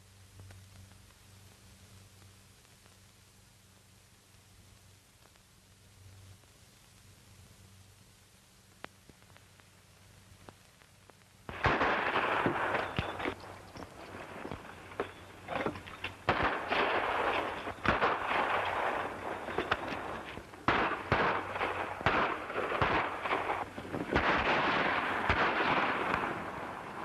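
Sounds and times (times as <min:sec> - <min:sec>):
steady hiss: 0:00.0 - 0:27.0
gunshots: 0:11.5 - 0:27.0.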